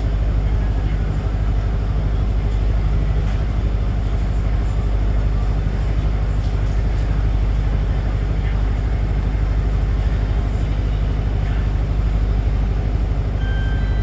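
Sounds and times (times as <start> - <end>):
bus diesel engine drone: 0.0 - 14.0
road and cabin noise: 0.0 - 14.0
short electronic beep: 13.4 - 14.0.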